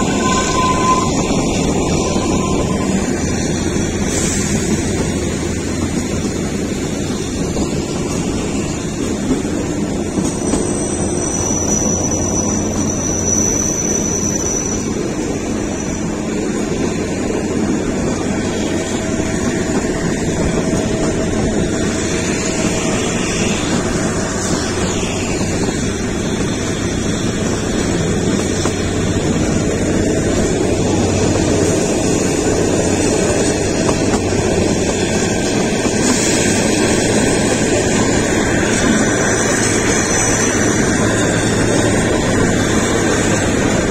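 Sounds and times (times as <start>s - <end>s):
high gliding tone: 0.0s - 4.5s
train rumbling and clattering: 0.0s - 43.9s.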